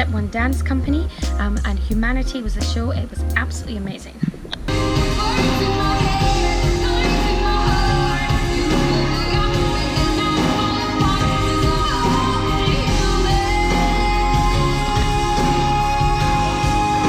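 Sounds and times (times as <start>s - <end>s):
strong steady bass: 0.0s - 17.0s
person singing: 4.8s - 17.0s.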